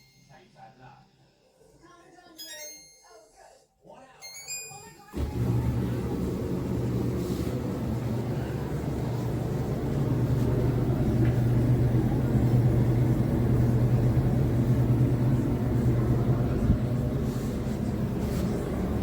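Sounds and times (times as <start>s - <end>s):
clothes dryer motor hum: 5.1s - 19.0s.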